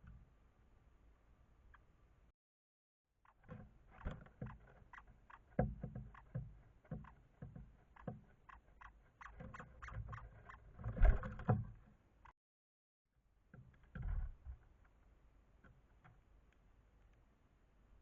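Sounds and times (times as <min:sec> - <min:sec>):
birds tapping on feeder: 0:03.4 - 0:10.3.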